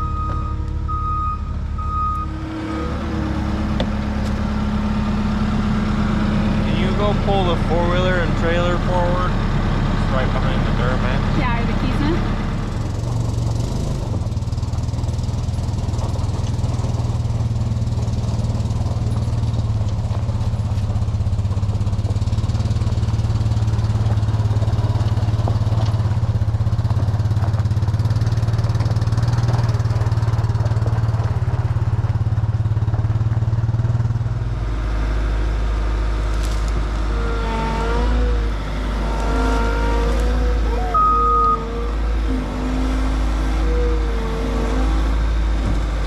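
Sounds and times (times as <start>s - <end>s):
reversing alarm beeping: 0.0s - 2.5s, 40.7s - 42.0s
skid steer engine running: 0.0s - 46.0s.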